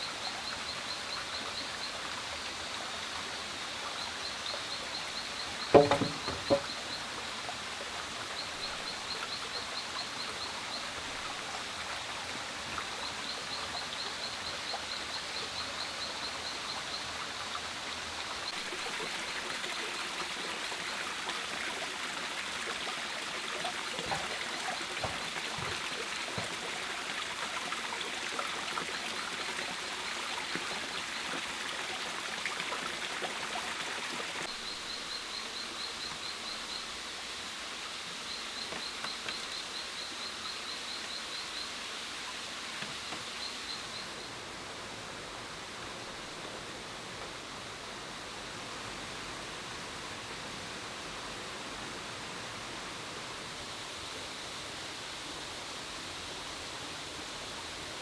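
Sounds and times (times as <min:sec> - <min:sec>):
running water: 0:00.0 - 0:50.7
sharp knocks: 0:05.7 - 0:06.8.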